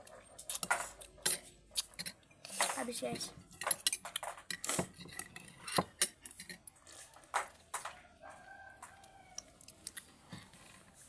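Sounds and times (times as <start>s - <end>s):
spoon clinking against dishware: 0.4s - 6.7s.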